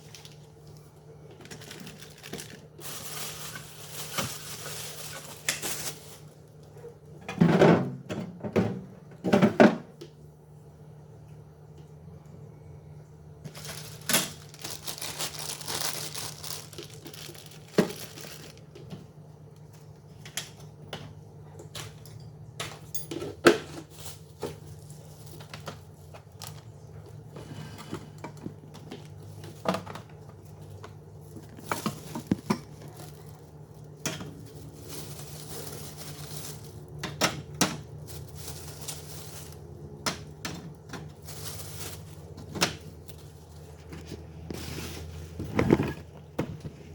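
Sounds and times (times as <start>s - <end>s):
plastic packaging crinkling: 0.0s - 6.6s, 13.5s - 19.0s, 23.8s - 26.9s, 28.4s - 40.4s, 41.0s - 45.9s
low steady hum: 0.0s - 46.9s.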